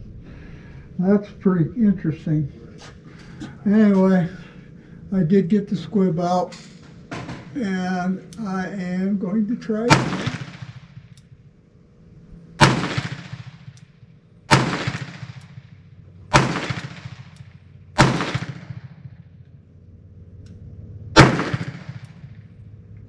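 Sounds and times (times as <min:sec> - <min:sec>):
revolver shots echoing: 0:09.8 - 0:11.6, 0:12.6 - 0:19.4, 0:21.2 - 0:22.5.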